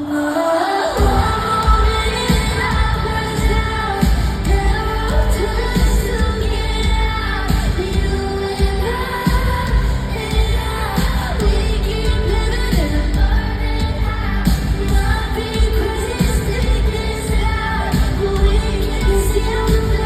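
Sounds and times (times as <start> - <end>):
pop music over arena speakers: 0.0 - 20.0
woman singing: 0.0 - 20.0
heavy bass beat: 1.0 - 20.0.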